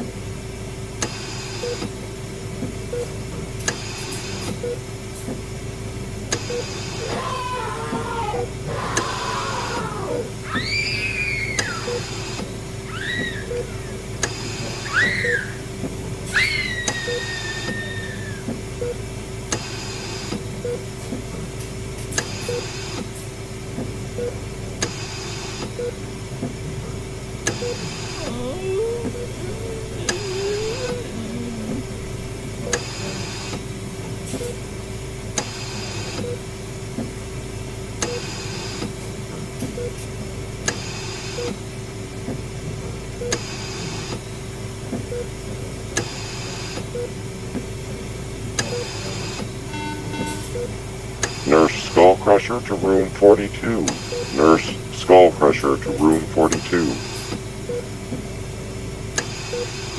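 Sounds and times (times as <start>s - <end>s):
electrical hum: 0.0s - 34.9s, 46.4s - 59.9s
faint wavering wailing tones: 28.1s - 32.7s.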